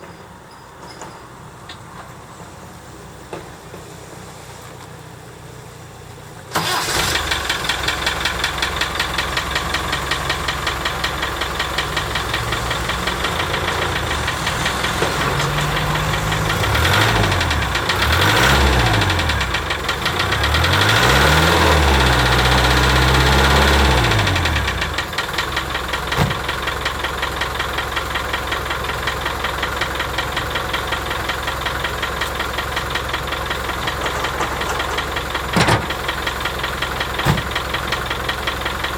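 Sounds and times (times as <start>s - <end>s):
diesel engine idling with knocking: 0.0s - 38.9s
diesel engine starting: 0.0s - 38.9s
engine revving: 9.6s - 25.2s.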